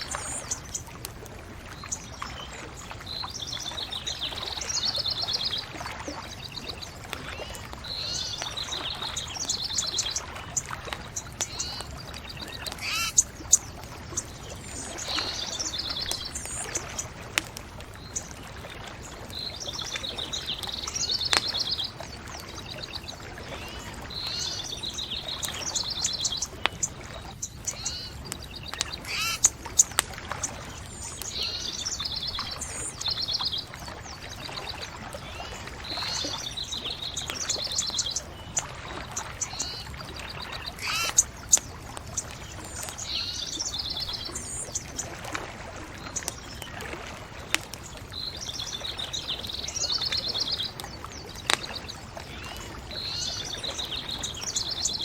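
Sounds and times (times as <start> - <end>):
songbird singing trilled phrases: 0.0 - 0.8, 3.1 - 17.1, 19.3 - 29.9, 30.5 - 45.1
bonfire cracks: 10.6 - 19.8, 26.2 - 31.4, 41.0 - 43.1.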